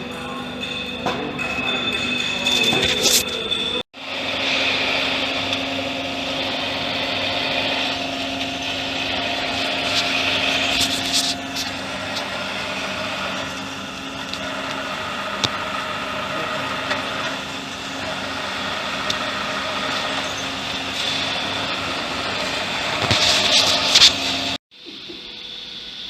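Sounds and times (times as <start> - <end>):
steady mechanical hum: 0.0 - 26.0.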